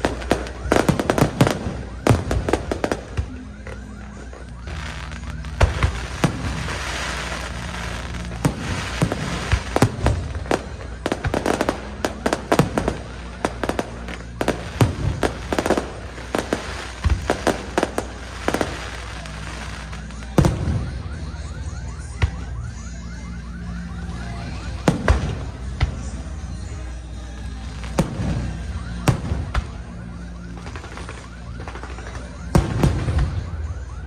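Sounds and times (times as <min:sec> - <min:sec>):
fireworks bursting bangs: 0:00.0 - 0:34.0
fireworks crackling hiss: 0:04.6 - 0:20.4.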